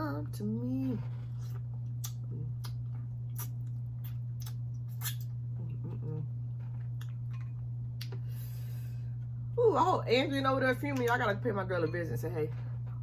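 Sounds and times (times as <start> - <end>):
low electrical hum: 0.0 - 13.0
wet mouth clicks and smacks: 2.0 - 5.3
person humming: 5.6 - 6.3.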